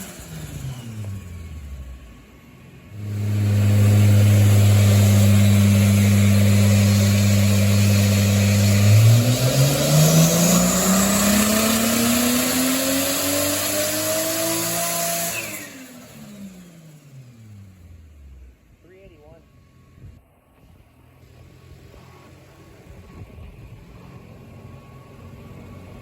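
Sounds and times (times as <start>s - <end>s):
car engine revving on dyno: 0.0s - 18.7s.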